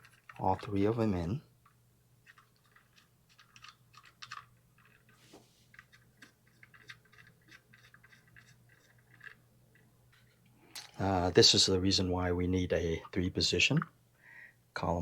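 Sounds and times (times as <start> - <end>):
small screws clicking and scraping: 0.0 - 0.8, 1.6 - 11.0.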